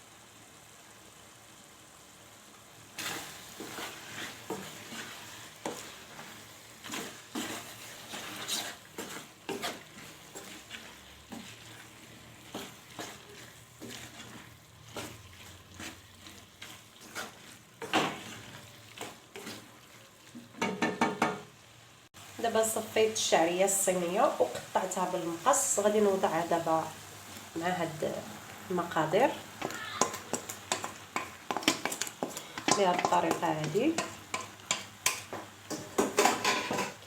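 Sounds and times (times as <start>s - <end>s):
utensils scraping cookware: 3.0s - 19.8s, 29.0s - 37.0s.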